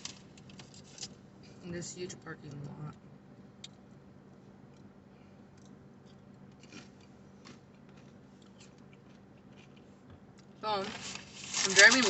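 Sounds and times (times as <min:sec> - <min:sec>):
steady low hum: 0:00.0 - 0:12.0
person chewing crunchy chips: 0:05.5 - 0:12.0.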